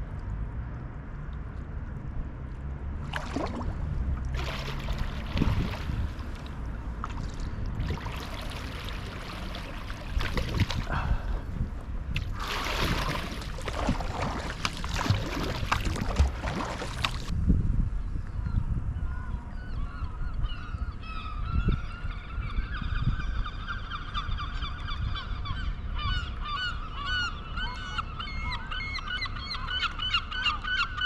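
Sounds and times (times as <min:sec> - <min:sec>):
steady low rumble: 0:00.0 - 0:19.5
paddle blades splashing: 0:03.0 - 0:17.3
water trickling off blades: 0:03.0 - 0:17.3.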